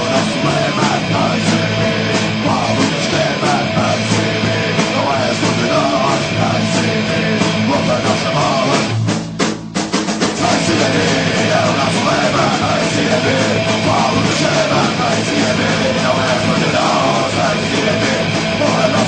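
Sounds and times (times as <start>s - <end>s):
person singing: 0.0s - 8.9s, 10.4s - 19.0s
drums: 0.0s - 19.0s
punk rock band: 0.0s - 19.0s.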